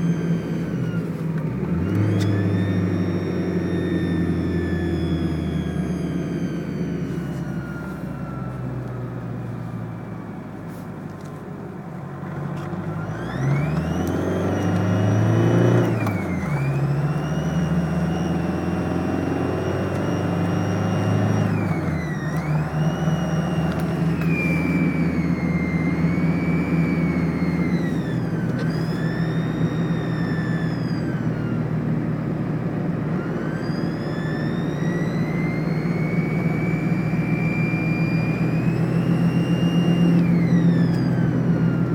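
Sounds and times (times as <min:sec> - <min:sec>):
diesel engine revving: 0:00.0 - 0:41.9
high whistle: 0:02.2 - 0:08.8, 0:15.0 - 0:31.5, 0:33.2 - 0:41.9.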